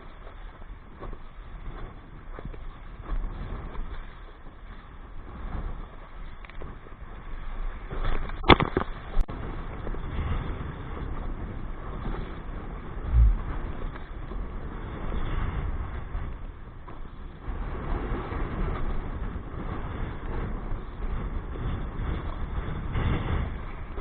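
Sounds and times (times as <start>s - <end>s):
wind buffeting microphone: 0.0s - 24.0s
low thump: 13.1s - 13.6s.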